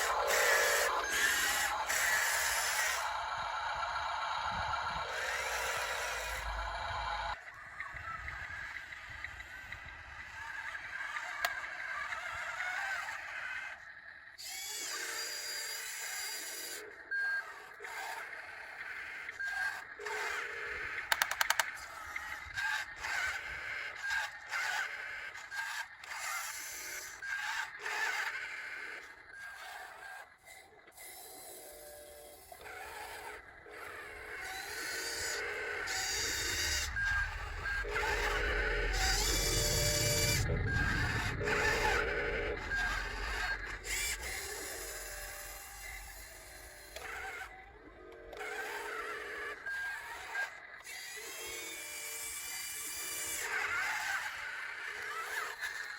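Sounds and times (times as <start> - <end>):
small electric motors whining: 0.0 - 55.9
rapid clicks: 21.1 - 21.9.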